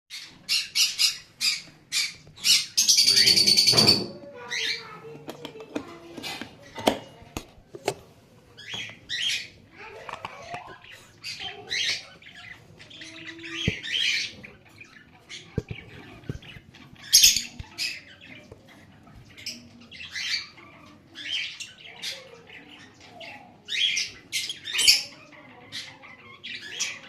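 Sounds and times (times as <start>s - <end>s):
lovebird squawking and chattering: 0.1s - 5.1s, 8.6s - 22.4s.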